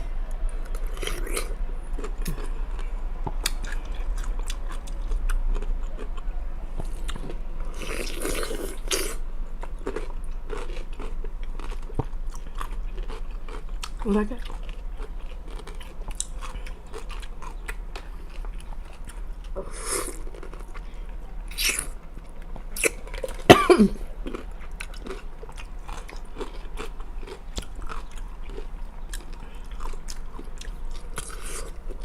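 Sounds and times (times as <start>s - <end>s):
chewing and crunching pickles: 0.0s - 32.0s.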